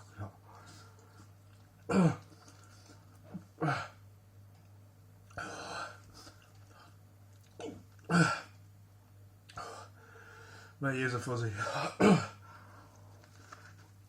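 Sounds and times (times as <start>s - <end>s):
man hiccuping: 1.9s - 2.3s, 3.6s - 4.0s, 7.6s - 8.6s, 11.7s - 12.4s.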